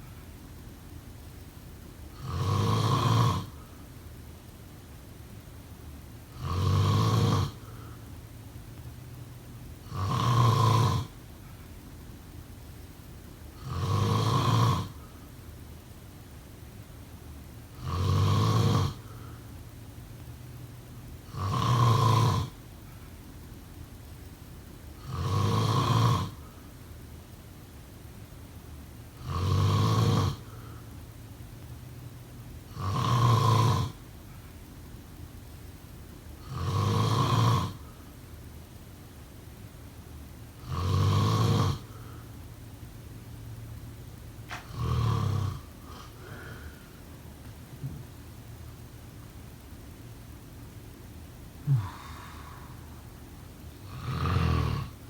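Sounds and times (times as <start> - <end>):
person snoring: 2.2 - 3.7, 6.3 - 8.0, 9.9 - 11.2, 13.6 - 15.1, 17.8 - 19.4, 21.3 - 22.6, 25.0 - 26.5, 29.2 - 30.9, 32.7 - 34.0, 36.4 - 37.9, 40.6 - 42.3, 44.5 - 47.0, 51.6 - 53.1, 53.8 - 55.0.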